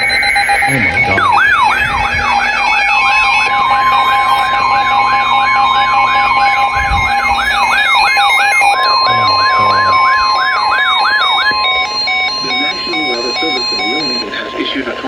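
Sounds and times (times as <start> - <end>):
electronic siren yelping: 0.0 - 14.5
faint stepping beeps: 6.1 - 14.7
steady alert tone: 8.8 - 14.2.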